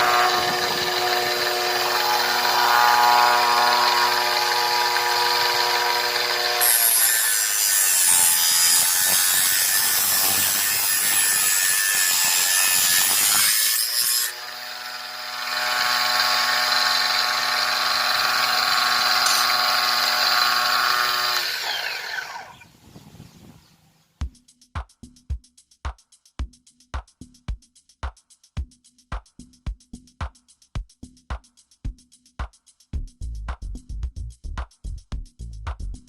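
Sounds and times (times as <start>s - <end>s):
motor blade whining: 0.0s - 13.4s, 14.2s - 22.6s
blade cutting material: 0.0s - 22.6s.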